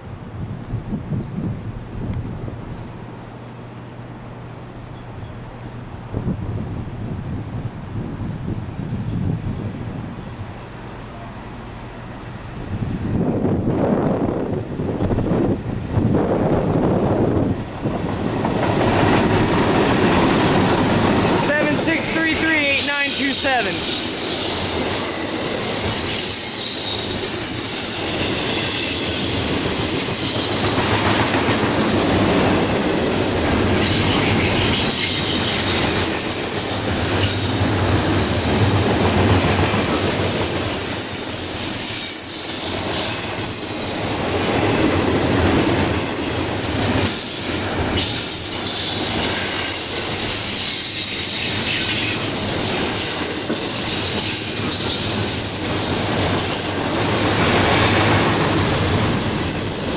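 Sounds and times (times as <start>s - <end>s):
train wheels rumbling on rail: 0.0s - 59.9s
wheels clacking over rail joints: 17.4s - 22.8s
high-pitched wheel squeal: 47.1s - 57.8s, 58.7s - 59.9s.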